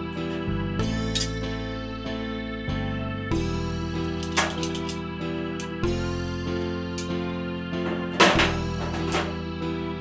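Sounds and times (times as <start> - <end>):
steady bass: 0.0 - 4.4.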